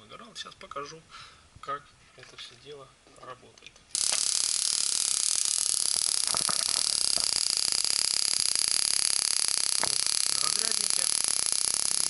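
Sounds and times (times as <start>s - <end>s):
spark gap crackling hiss: 3.9s - 12.0s.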